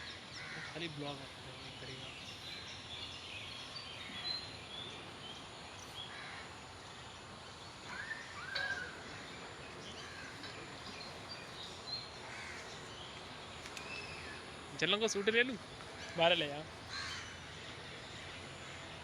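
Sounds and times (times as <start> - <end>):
steady background hiss: 0.0 - 19.0
birds chirping and whistling: 1.8 - 6.2, 7.0 - 15.1.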